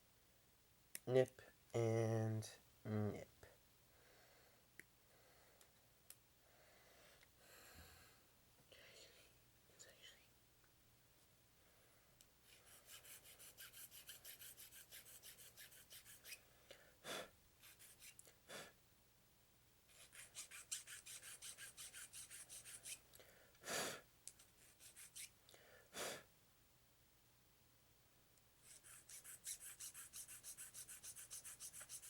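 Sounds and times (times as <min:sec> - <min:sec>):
file rasping on plastic: 0:12.5 - 0:16.4, 0:19.9 - 0:23.0, 0:24.6 - 0:25.3, 0:28.6 - 0:32.0.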